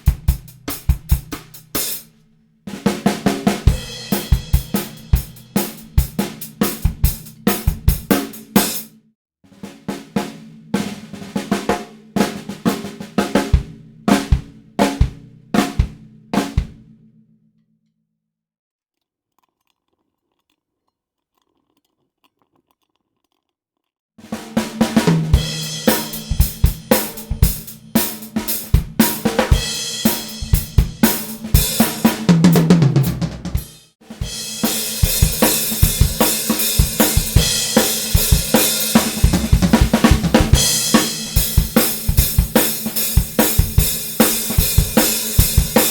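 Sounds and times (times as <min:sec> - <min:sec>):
drum kit playing a groove: 0:00.0 - 0:02.1, 0:02.7 - 0:08.9, 0:09.6 - 0:16.9, 0:24.2 - 0:45.9
tom fill: 0:02.7 - 0:08.8, 0:09.9 - 0:17.1, 0:24.2 - 0:45.9
snare drum strokes: 0:02.7 - 0:08.9, 0:24.2 - 0:45.9
cymbals washing: 0:25.4 - 0:32.3, 0:34.2 - 0:45.9.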